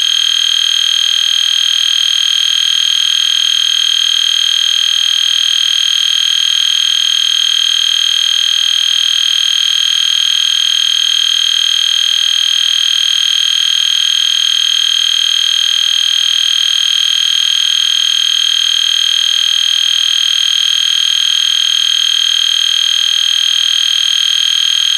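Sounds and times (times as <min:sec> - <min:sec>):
fire alarm horn steady tone: 0:00.0 - 0:24.9.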